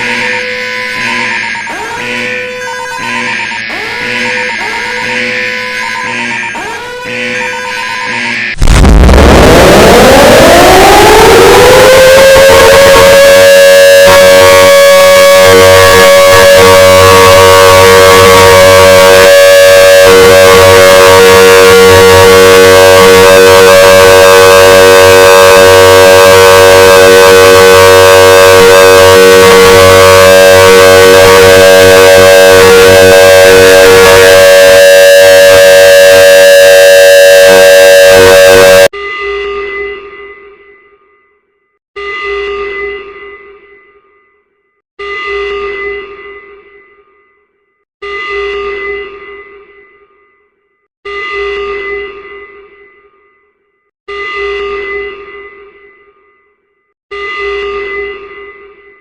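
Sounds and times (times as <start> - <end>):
distorted siren wailing: 0.0 - 39.0.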